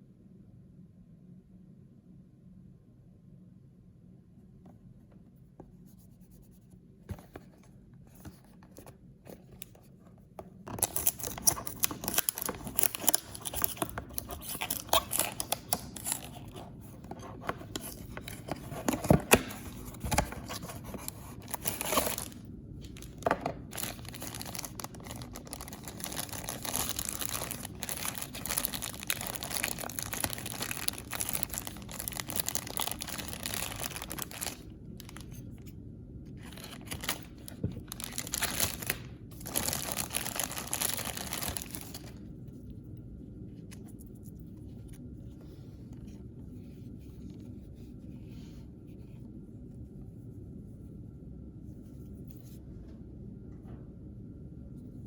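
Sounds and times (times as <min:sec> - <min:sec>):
packaging being torn and crinkled: 0:10.7 - 0:35.4, 0:36.4 - 0:42.2.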